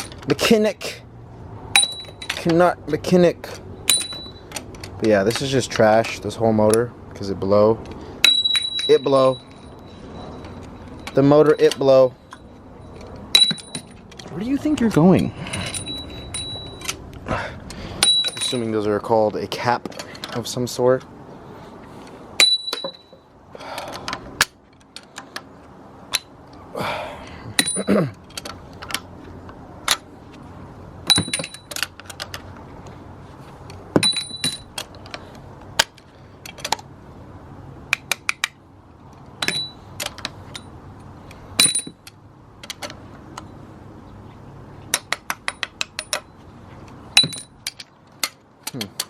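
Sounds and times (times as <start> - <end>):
small metal parts clinking: 0.0 - 0.4, 1.7 - 2.7, 3.5 - 6.2, 7.8 - 18.9, 22.4 - 23.2, 27.5 - 29.1, 31.0 - 32.5, 33.7 - 36.8, 39.2 - 43.0, 44.9 - 49.0.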